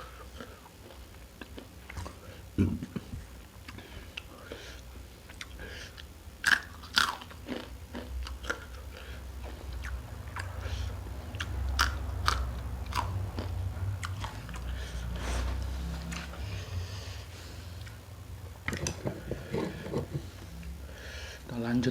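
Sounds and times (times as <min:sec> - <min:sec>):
crunchy chewing: 0:00.0 - 0:02.4, 0:03.0 - 0:18.0
person biting crunchy food: 0:06.4 - 0:08.8.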